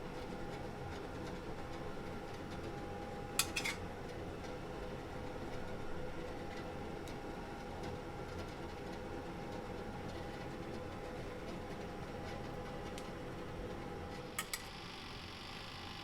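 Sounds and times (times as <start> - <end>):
tableware clinking: 3.4 - 3.8.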